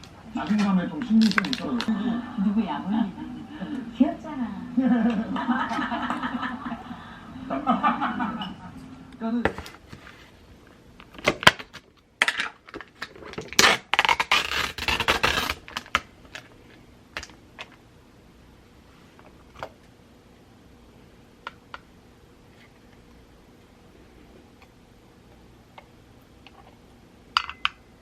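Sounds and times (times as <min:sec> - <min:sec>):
small hard objects clattering: 0:00.4 - 0:01.9.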